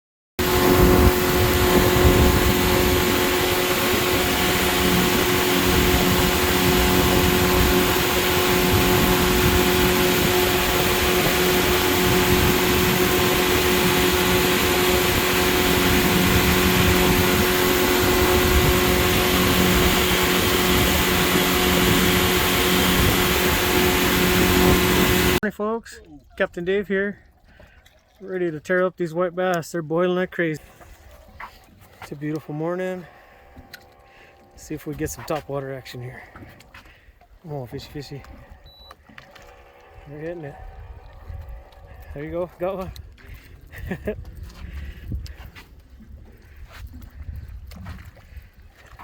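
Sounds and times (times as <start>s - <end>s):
wind buffeting microphone: 0.4s - 25.4s, 39.9s - 49.0s
outboard motor running: 0.4s - 25.5s, 27.2s - 28.6s, 30.6s - 49.0s.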